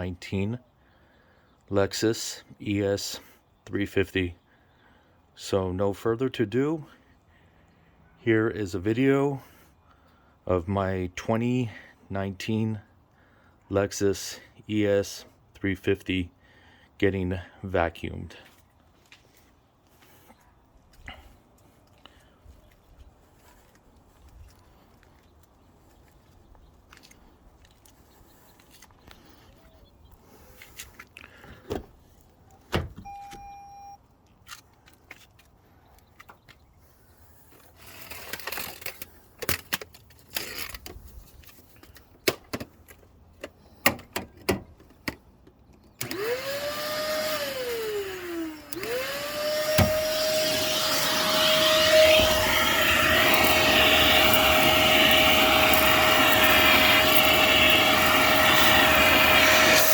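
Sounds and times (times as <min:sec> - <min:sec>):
short beep: 0:33.0 - 0:34.0
vacuum cleaner running: 0:46.0 - 0:59.9.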